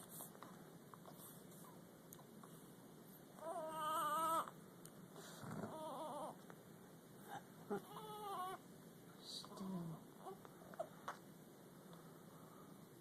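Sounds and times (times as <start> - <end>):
baby whimpering cries: 3.4 - 4.6, 5.7 - 6.4, 7.3 - 8.6.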